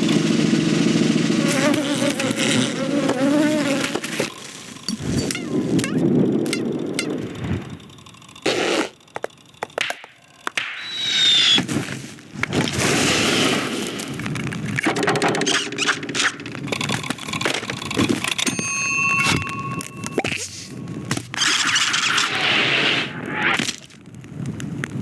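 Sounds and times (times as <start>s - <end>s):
steady pitched tone: 18.4s - 21.8s
gliding high squeal: 18.4s - 23.2s.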